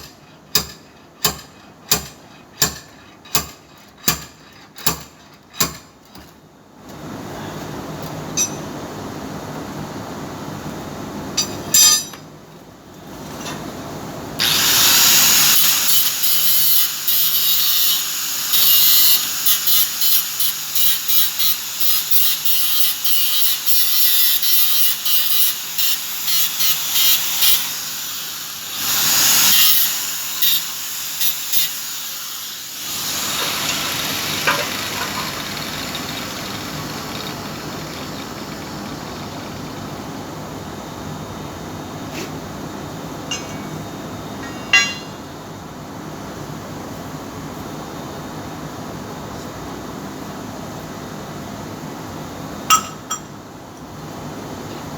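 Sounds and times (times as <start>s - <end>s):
power tool running in pulses: 14.4s - 40.0s.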